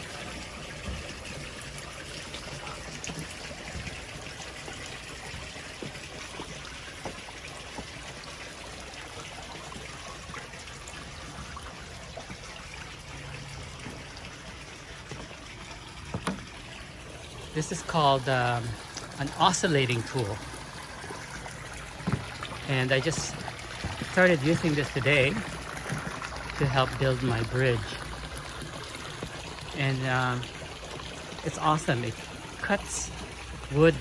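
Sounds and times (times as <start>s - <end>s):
water trickling: 0.0s - 34.0s
light knocks: 16.1s - 16.5s.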